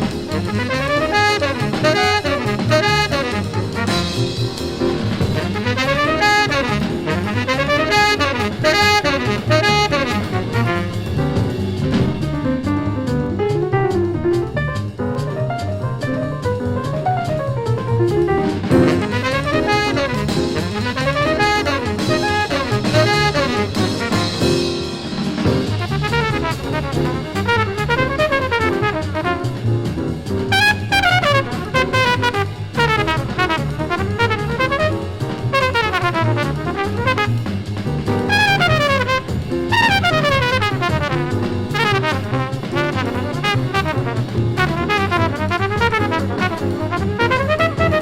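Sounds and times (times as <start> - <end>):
fast trumpet line: 0.0 - 12.6, 15.7 - 48.0
hard-bop jazz from vinyl: 0.0 - 48.0.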